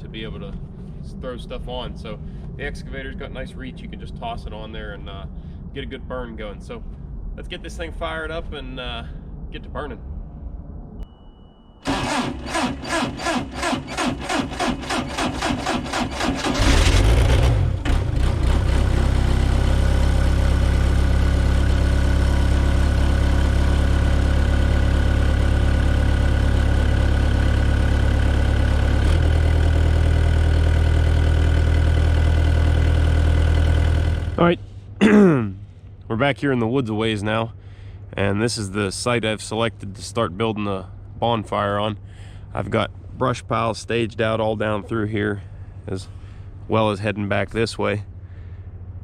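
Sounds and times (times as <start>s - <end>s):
diesel engine starter cranking: 11.8s - 18.8s
diesel engine idling: 11.8s - 34.9s, 40.7s - 49.0s.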